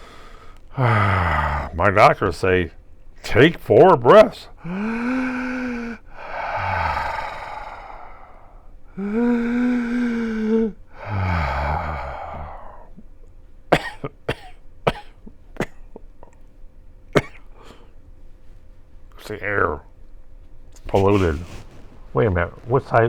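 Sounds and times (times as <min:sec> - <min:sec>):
man breathing deeply: 0:00.0 - 0:01.8, 0:04.6 - 0:13.1, 0:20.9 - 0:22.8
man groaning: 0:00.8 - 0:01.8, 0:04.6 - 0:08.3, 0:09.0 - 0:13.0.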